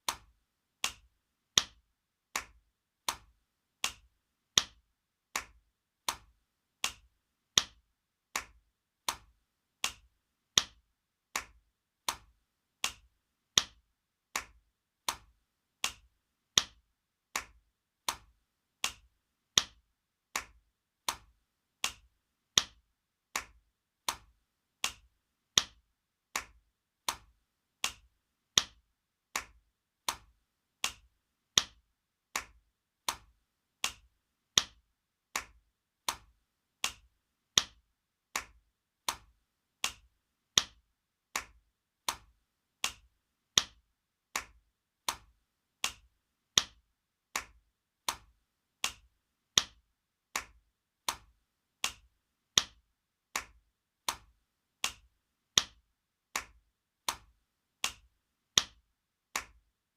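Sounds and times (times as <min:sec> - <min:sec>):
sharp hand slaps: 0:00.0 - 0:01.8, 0:02.4 - 0:04.8, 0:05.4 - 0:07.8, 0:08.4 - 0:10.8, 0:11.4 - 0:13.8, 0:14.4 - 0:16.8, 0:17.4 - 0:19.8, 0:20.4 - 0:22.8, 0:23.4 - 0:25.8, 0:26.4 - 0:28.0, 0:29.4 - 0:31.0, 0:32.4 - 0:34.0, 0:35.4 - 0:37.0, 0:38.4 - 0:40.0, 0:41.4 - 0:43.0, 0:44.4 - 0:46.0, 0:47.4 - 0:49.0, 0:50.4 - 0:52.0, 0:53.4 - 0:55.0, 0:56.4 - 0:58.0, 0:59.4 - 0:59.6.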